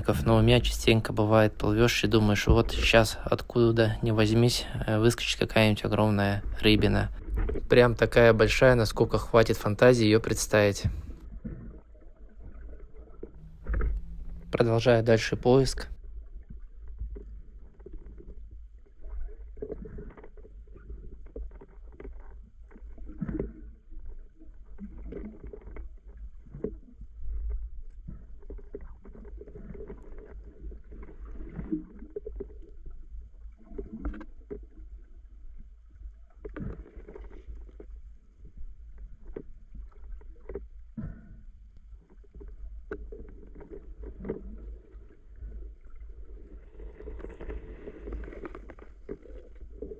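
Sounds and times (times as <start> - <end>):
deep rumble: 0.0 - 9.2, 13.4 - 16.3
underwater water sloshing: 0.0 - 49.9.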